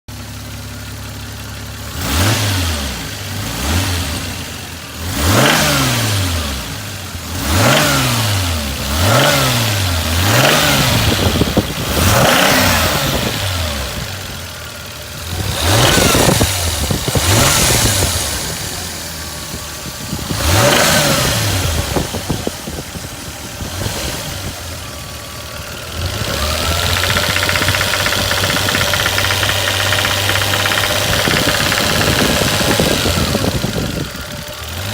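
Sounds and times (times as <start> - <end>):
car engine revving: 1.8 - 34.9
engine knocking: 10.3 - 21.0, 24.7 - 34.9.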